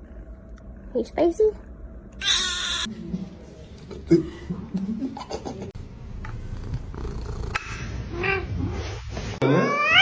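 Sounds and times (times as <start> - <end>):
cat purring: 6.4 - 7.7.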